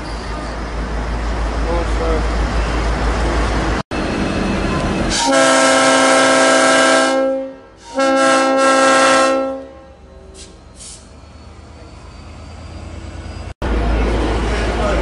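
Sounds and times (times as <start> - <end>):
locomotive air horn blasts: 5.1 - 10.0.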